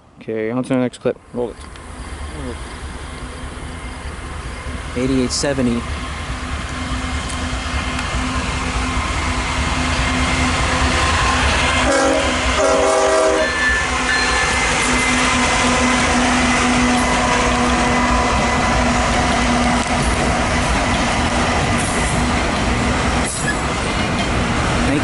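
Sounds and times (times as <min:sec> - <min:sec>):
passing freight train: 0:00.8 - 0:25.0
locomotive air horn: 0:11.8 - 0:19.0.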